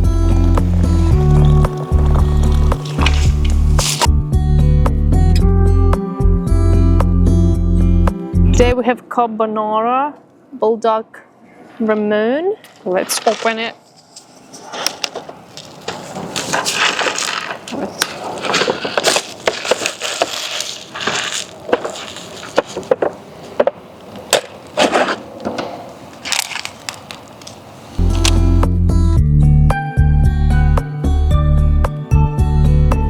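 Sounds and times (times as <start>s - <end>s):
plastic wrapper tearing and crinkling: 0.0s - 4.1s, 14.8s - 23.0s, 26.2s - 28.6s
music: 0.0s - 8.8s, 28.0s - 33.0s.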